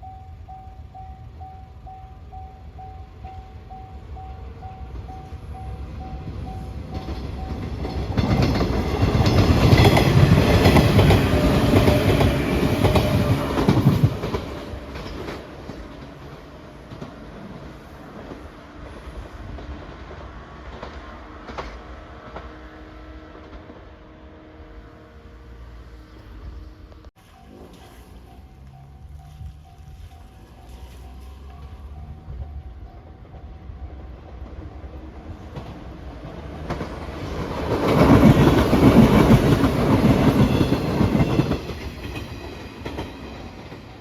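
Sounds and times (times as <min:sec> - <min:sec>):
crossing warning bell dinging: 0:00.0 - 0:17.1, 0:27.2 - 0:35.7, 0:36.7 - 0:44.0
train passing: 0:00.0 - 0:44.0
wheels clattering over rail joints: 0:06.3 - 0:22.5.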